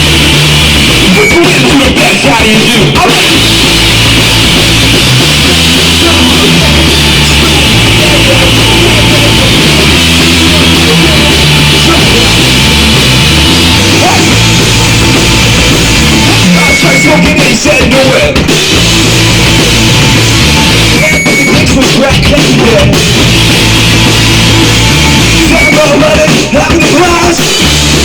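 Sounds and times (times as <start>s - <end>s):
bass guitar: 0.0s - 28.0s
drums: 0.0s - 28.0s
electric guitar chords: 0.0s - 28.0s.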